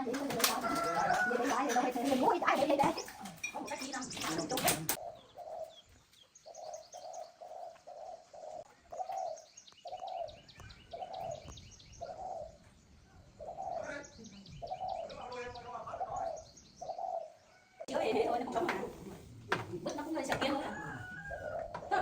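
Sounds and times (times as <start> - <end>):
dove cooing: 0.0 - 12.7, 13.3 - 15.2, 15.9 - 17.4, 20.7 - 22.0
small birds chirping: 0.0 - 22.0.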